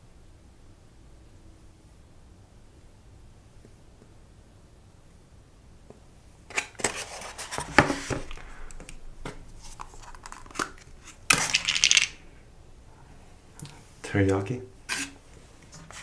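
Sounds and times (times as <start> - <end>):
plastic packaging crinkling: 6.5 - 12.4.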